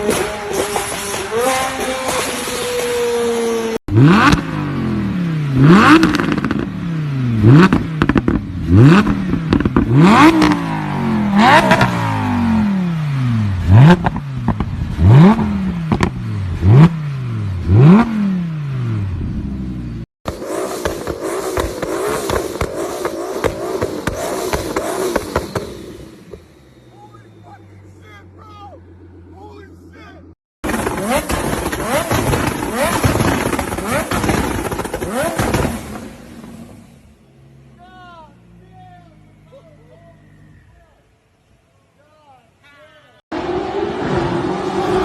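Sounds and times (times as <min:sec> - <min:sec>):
car engine revving: 0:00.0 - 0:40.6
exhaust pops: 0:07.6 - 0:10.6, 0:13.9 - 0:16.2, 0:20.3 - 0:26.6, 0:30.6 - 0:36.8.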